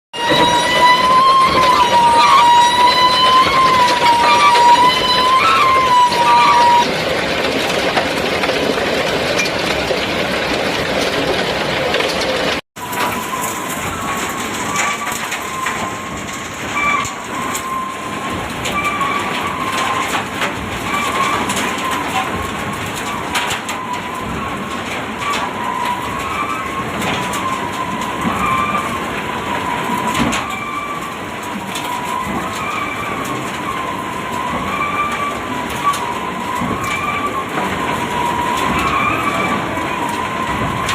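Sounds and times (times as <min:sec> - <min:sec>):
high-pitched squeal: 0:00.2 - 0:10.0, 0:11.8 - 0:40.9
elevator rattling clatter: 0:00.2 - 0:40.9.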